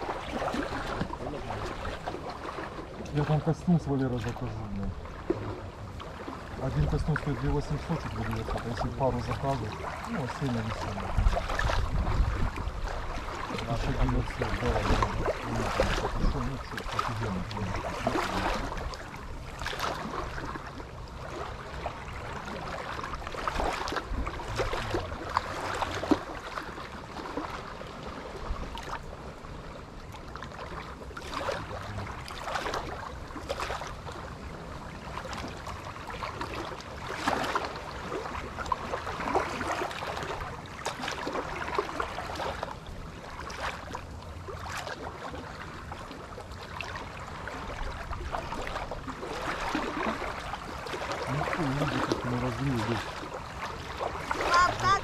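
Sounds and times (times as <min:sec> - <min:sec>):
water lapping and splashing: 0:00.0 - 0:55.0
wind buffeting microphone: 0:04.4 - 0:21.9.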